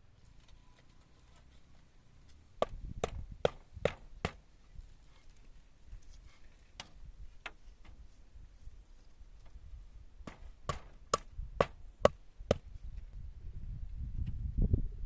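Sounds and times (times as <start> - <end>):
sharp chopping knocks: 2.6 - 4.4, 10.3 - 12.7.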